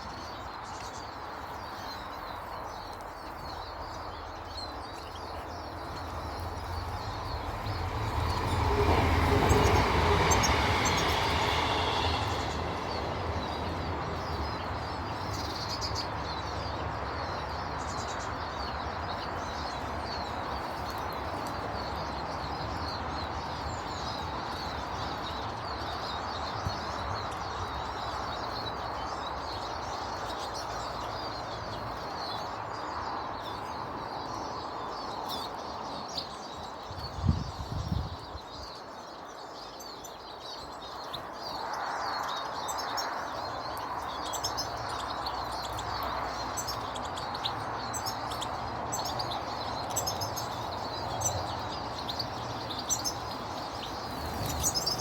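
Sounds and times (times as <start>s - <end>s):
small birds chirping: 0.0s - 55.0s
steady rushing noise: 6.7s - 14.8s
rumbling swell: 6.8s - 14.1s.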